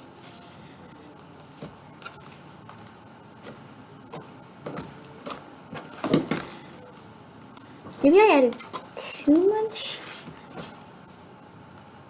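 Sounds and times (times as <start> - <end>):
slime squelching in hands: 1.4 - 10.9.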